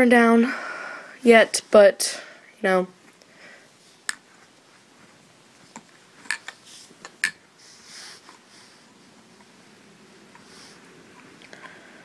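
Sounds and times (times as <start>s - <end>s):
plastic pipes clicking together: 6.2s - 7.4s.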